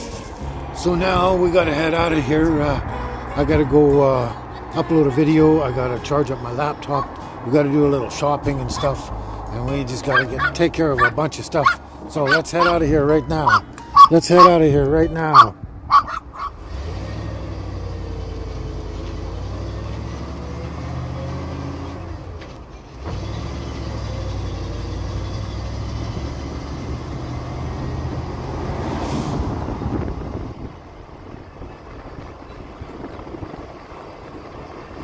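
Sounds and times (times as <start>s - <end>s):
vehicle engine driving off: 15.2s - 35.0s.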